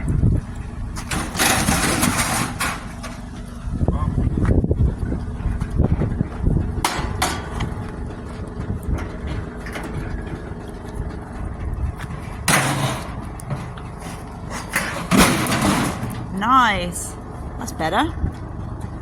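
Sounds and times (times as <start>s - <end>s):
vehicle engine idling: 0.0s - 19.0s
clattering burst: 1.0s - 3.2s, 14.6s - 16.3s.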